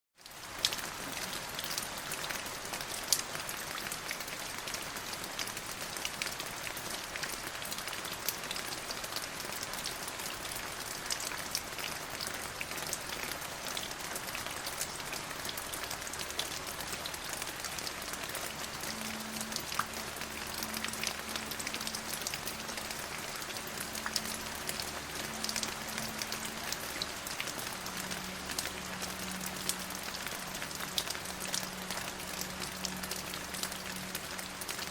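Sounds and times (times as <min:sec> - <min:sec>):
rain falling: 0:00.2 - 0:34.9.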